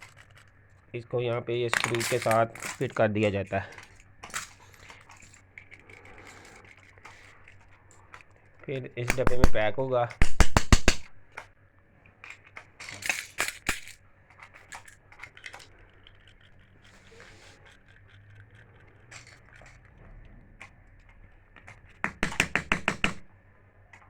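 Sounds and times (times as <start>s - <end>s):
plastic and metal parts clicking: 0.0s - 0.8s, 1.6s - 23.3s.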